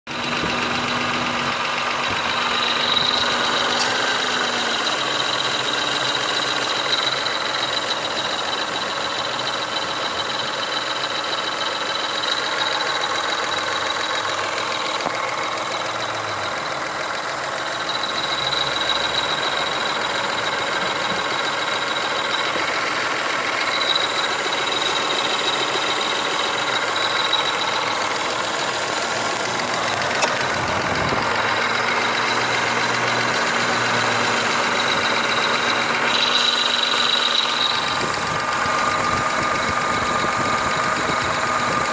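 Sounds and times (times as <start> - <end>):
car engine idling: 0.1 - 41.9
thin high whistle: 34.6 - 38.0.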